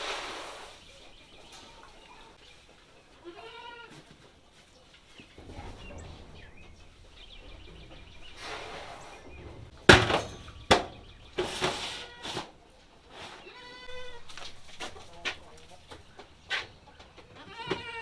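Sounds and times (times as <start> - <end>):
baby goats bleating: 3.2 - 4.0, 13.4 - 14.3, 17.4 - 18.0
rustling handling noises: 3.9 - 17.4
loud sharp knocks: 5.4 - 12.1.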